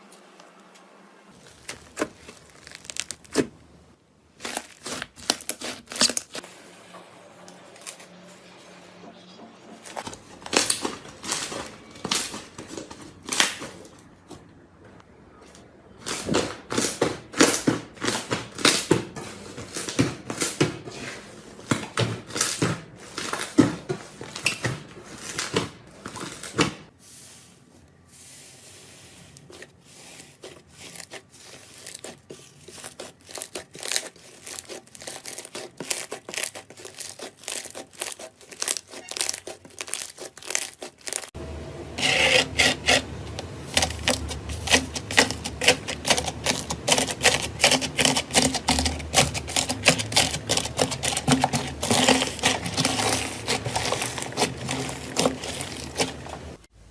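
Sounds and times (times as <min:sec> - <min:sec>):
slime crackling and popping: 0:01.4 - 0:03.7, 0:30.8 - 0:41.4, 0:43.8 - 0:56.6.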